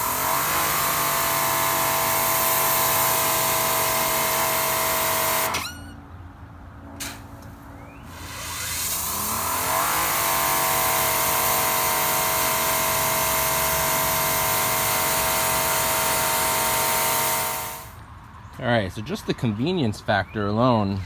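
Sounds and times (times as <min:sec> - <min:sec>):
pressure washer motor whining: 0:00.0 - 0:06.0, 0:07.8 - 0:18.0.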